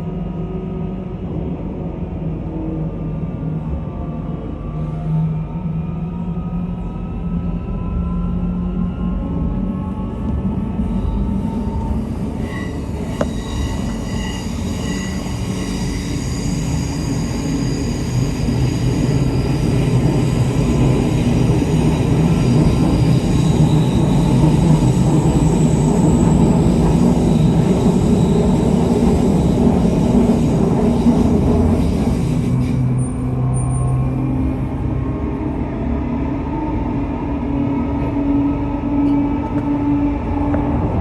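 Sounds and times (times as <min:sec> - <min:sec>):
train rumbling past: 0:00.0 - 0:41.0
high-pitched wheel squeal: 0:11.5 - 0:20.8.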